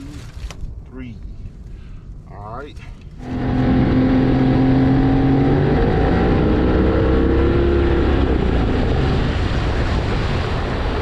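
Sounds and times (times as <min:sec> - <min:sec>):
wind rush: 0:03.1 - 0:11.0
water rush: 0:08.4 - 0:11.0.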